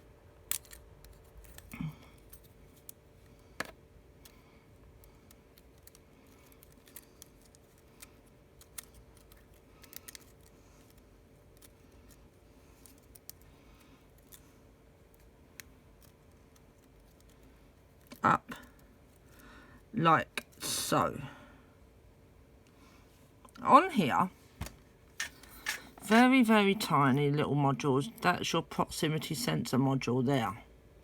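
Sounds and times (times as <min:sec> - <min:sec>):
faint steady hum: 0:00.0 - 0:31.0.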